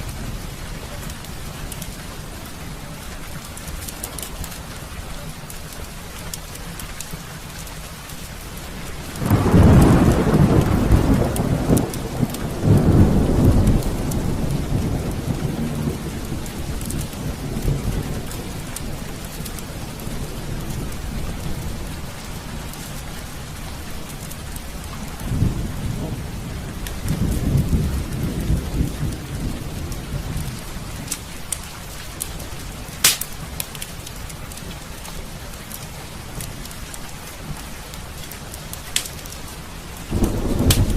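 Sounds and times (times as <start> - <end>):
heavy rain falling: 0.0 - 40.9
rolling thunder: 9.1 - 22.7, 25.0 - 31.6, 40.0 - 40.9
sharp click: 33.0 - 33.3.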